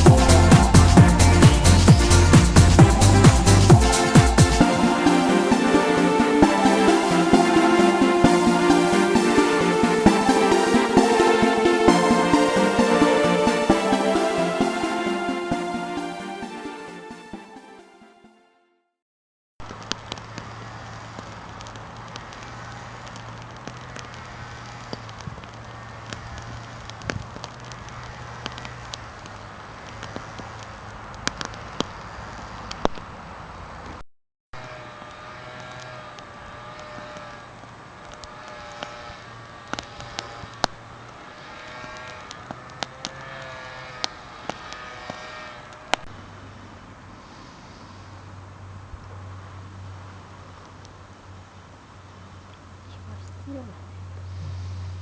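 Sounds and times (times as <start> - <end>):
bonfire crackling: 0.0 - 16.8, 19.6 - 34.0, 35.0 - 43.4, 44.0 - 54.3
bonfire crackling and popping: 19.6 - 34.0, 37.6 - 38.9, 39.6 - 41.3, 41.9 - 43.4.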